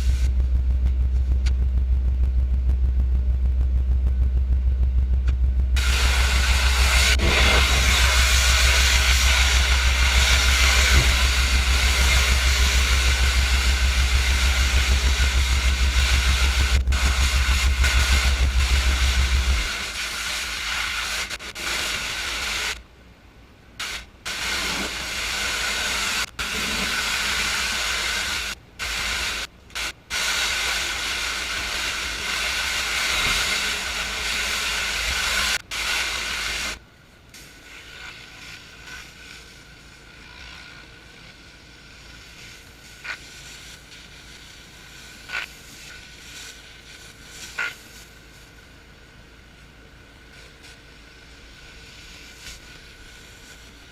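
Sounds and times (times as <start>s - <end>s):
high-pressure water spray hiss: 0.0s - 0.3s, 5.8s - 22.8s, 23.8s - 53.9s
pressure washer engine hum: 0.0s - 21.3s.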